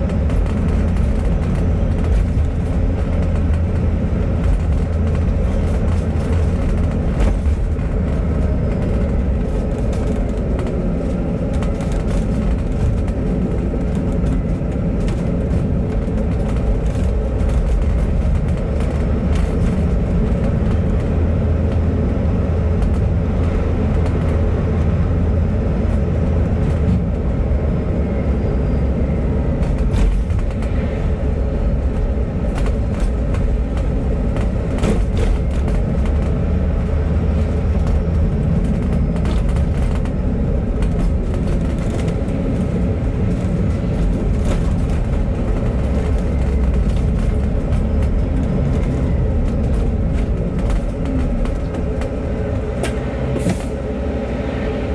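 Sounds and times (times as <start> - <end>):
bus engine and road rumble: 0.0 - 54.9.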